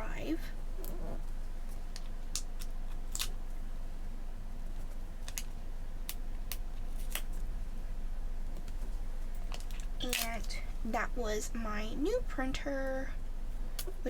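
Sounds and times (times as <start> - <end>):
steady low hum: 0.0 - 14.0
paper and sticker clicks: 9.5 - 10.6.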